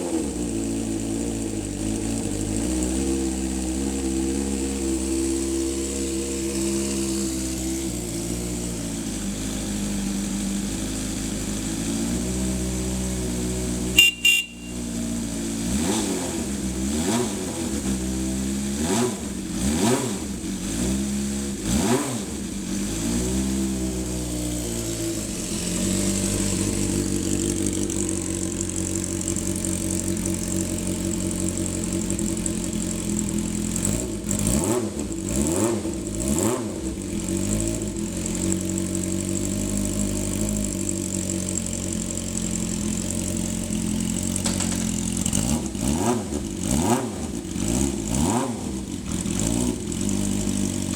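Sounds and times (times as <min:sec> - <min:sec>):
motorcycle engine revving: 0:00.0 - 0:50.9.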